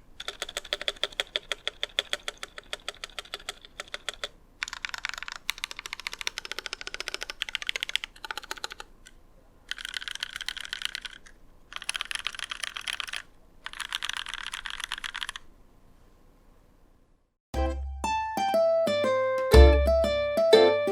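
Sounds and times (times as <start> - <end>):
mechanical keyboard typing: 0.2 - 15.5.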